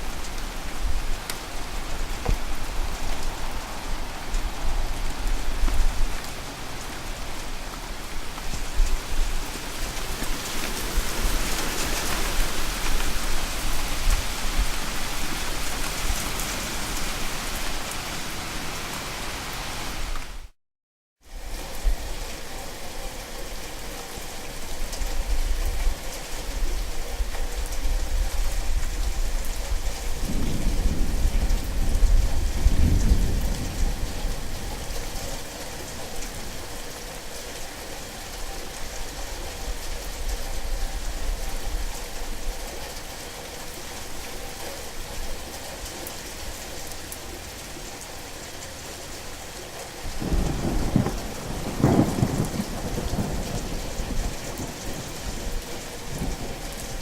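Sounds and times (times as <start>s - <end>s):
heavy rain: 0.0s - 20.6s, 21.3s - 57.0s
rolling thunder: 30.2s - 35.2s, 50.2s - 55.5s.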